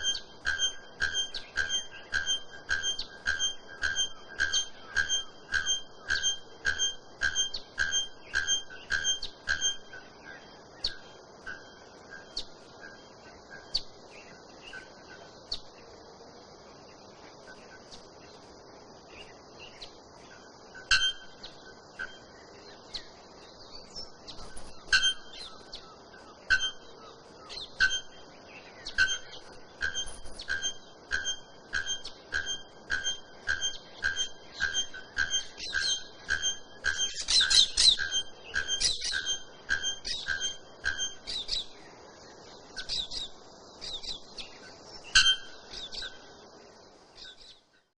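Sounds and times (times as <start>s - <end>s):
bird's metallic tonk calls: 0.0s - 13.9s, 19.7s - 22.3s, 23.8s - 41.9s, 42.8s - 46.2s.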